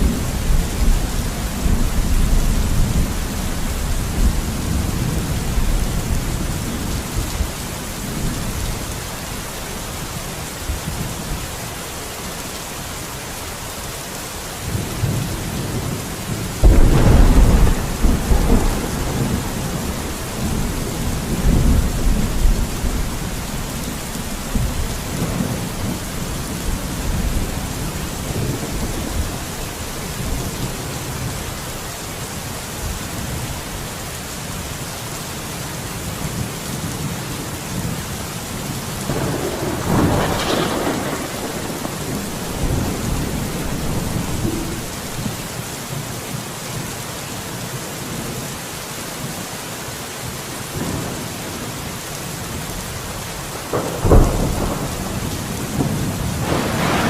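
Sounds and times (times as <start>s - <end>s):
thunder rumbling: 0.0s - 9.0s, 14.7s - 31.4s, 39.0s - 45.6s, 53.5s - 57.0s
rain hissing: 0.0s - 47.1s, 50.3s - 57.0s.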